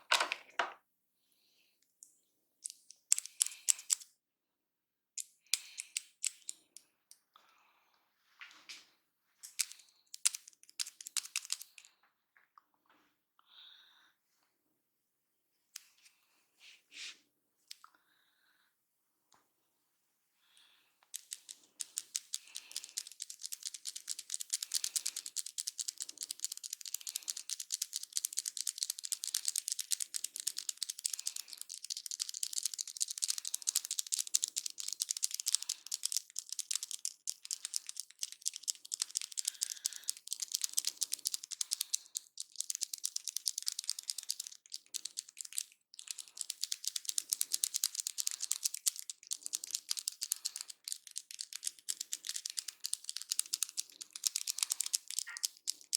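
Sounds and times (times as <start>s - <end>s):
hair crackling against scalp: 21.2s - 55.9s.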